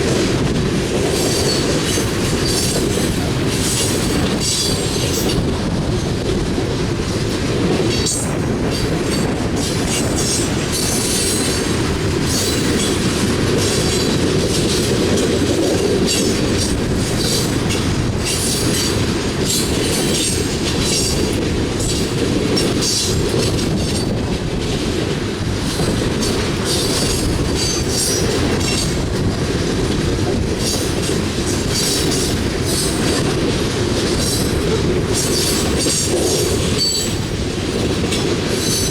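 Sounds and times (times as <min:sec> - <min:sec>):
train cars rumbling past: 0:00.0 - 0:38.9
high-pitched wheel squeals: 0:36.8 - 0:37.2.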